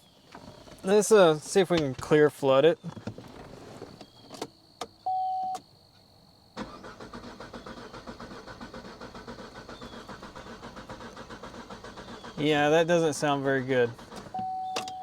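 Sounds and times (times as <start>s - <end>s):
starter cranking engine: 6.6s - 12.7s, 13.8s - 14.4s.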